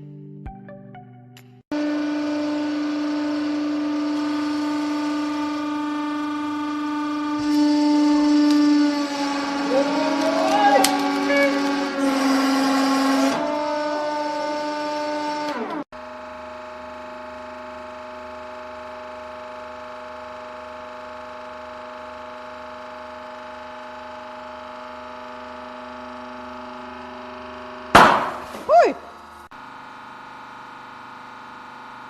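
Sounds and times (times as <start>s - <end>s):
machine whine: 1.7s - 32.0s.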